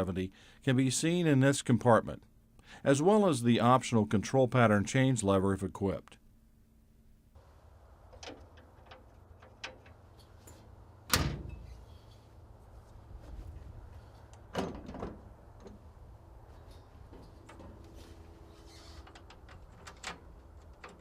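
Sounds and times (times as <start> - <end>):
metal door shutting clunk: 8.1 - 11.8, 14.4 - 15.8, 19.0 - 21.0.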